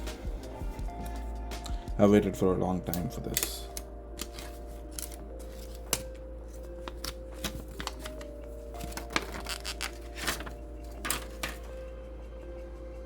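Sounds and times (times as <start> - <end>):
background music: 0.0 - 13.0
smartphone packaging clicks and rustles: 3.0 - 11.7.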